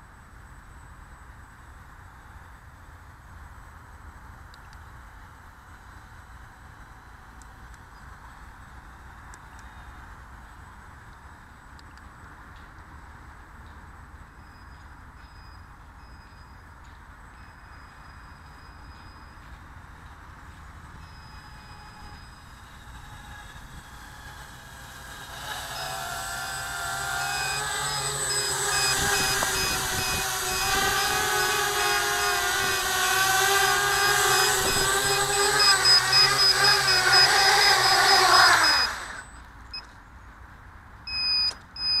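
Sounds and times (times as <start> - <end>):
drone motors buzzing: 20.9 - 39.5
short electronic beep: 27.3 - 30.7, 41.1 - 42.0.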